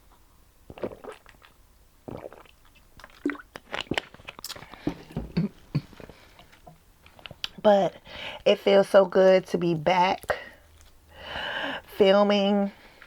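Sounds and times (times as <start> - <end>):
chewing with wet mouth smacks: 0.8 - 4.8.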